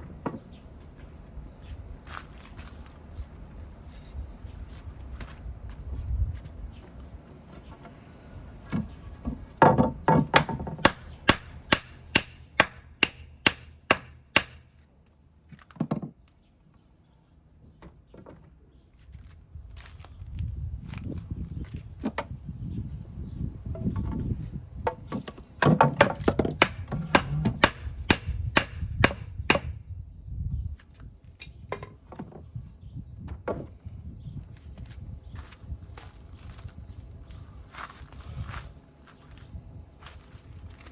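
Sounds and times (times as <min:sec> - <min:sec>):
axe chopping wood: 0:09.6 - 0:14.7, 0:24.9 - 0:29.8
hand tool striking wood: 0:09.6 - 0:14.7, 0:24.9 - 0:29.8.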